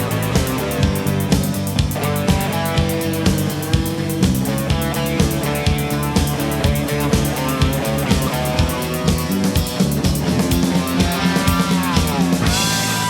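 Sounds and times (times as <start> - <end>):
bass guitar: 0.0 - 13.0
drum kit beat: 0.0 - 13.0
electric guitars: 0.0 - 13.0
guitar sliding down in pitch: 10.9 - 13.0.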